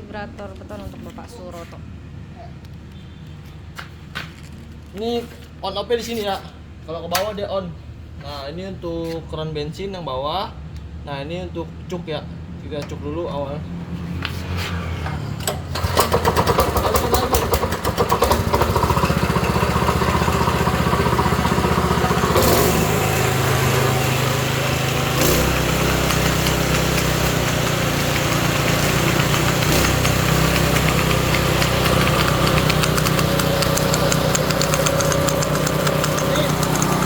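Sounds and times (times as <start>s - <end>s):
small petrol engine running: 15.5s - 37.0s.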